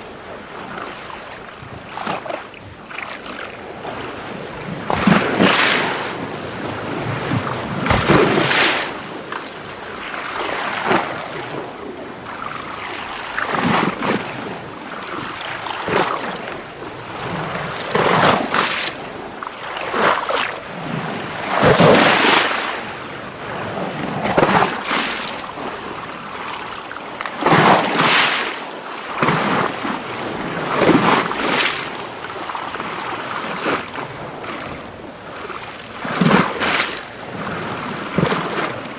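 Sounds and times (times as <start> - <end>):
water sloshing and splashing: 0.6 - 38.9.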